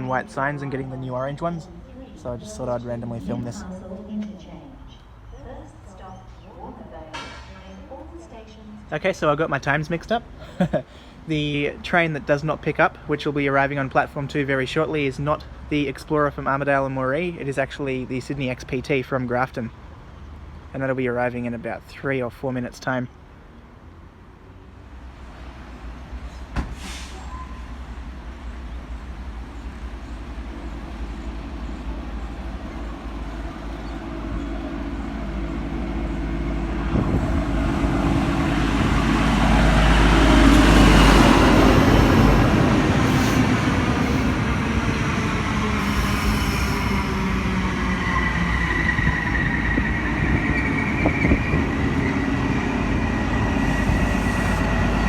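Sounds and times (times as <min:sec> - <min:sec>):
train passing: 0:00.0 - 0:07.1, 0:23.3 - 0:55.0
high wheel squeal: 0:45.8 - 0:55.0.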